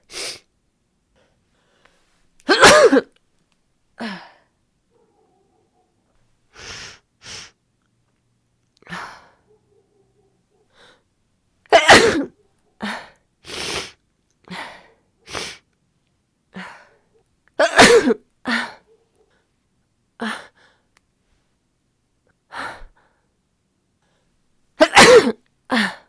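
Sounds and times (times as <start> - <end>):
woman sneezing loudly: 2.5 - 3.1, 11.7 - 12.4, 17.6 - 18.6, 24.8 - 26.0.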